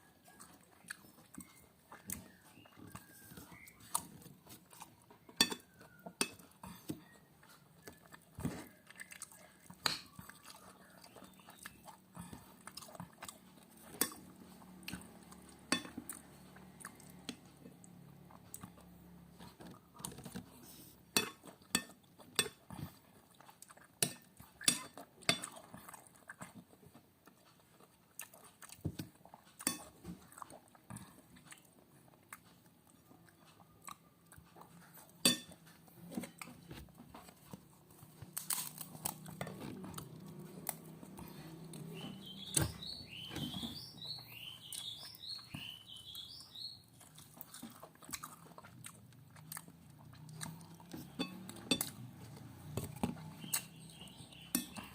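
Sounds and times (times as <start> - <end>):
chewing and crunching food: 0.0 - 54.9
spoon clicking on plate: 54.5 - 54.8.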